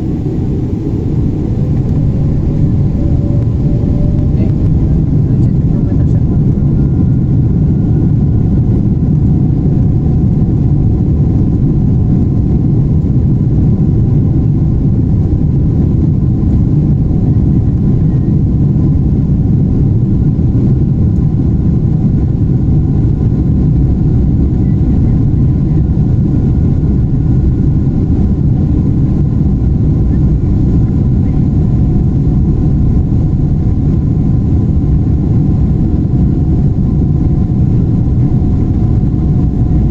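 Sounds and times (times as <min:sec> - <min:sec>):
faint steady hum: 0:00.0 - 0:14.9
aircraft cabin engine rumble: 0:00.0 - 0:39.9.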